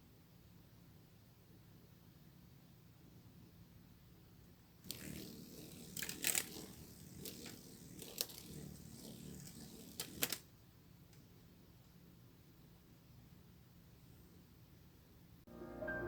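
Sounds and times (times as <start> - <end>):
sharp clicks and crackling rustle: 4.8 - 10.4.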